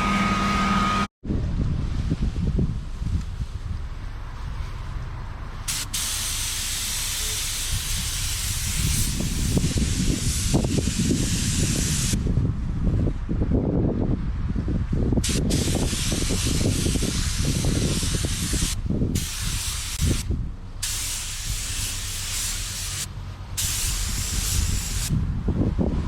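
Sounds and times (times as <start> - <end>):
steady low rumble: 0.0 - 26.0
spray gun hissing: 5.6 - 12.2, 15.2 - 25.2.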